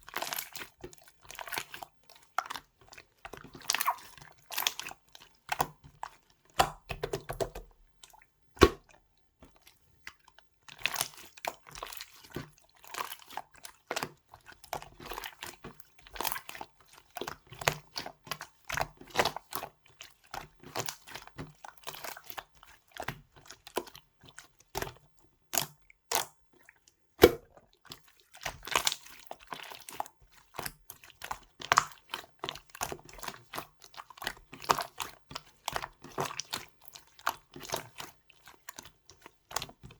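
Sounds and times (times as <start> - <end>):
slime snaps: 27.2 - 27.5.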